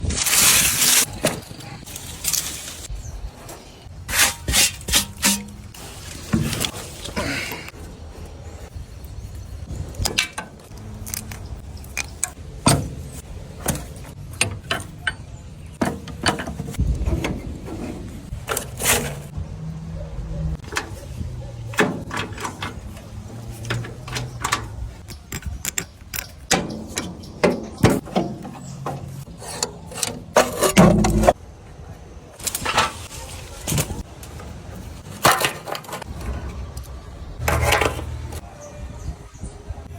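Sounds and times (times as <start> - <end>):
metal clicking and clanking: 9.9 - 19.4, 20.6 - 31.4.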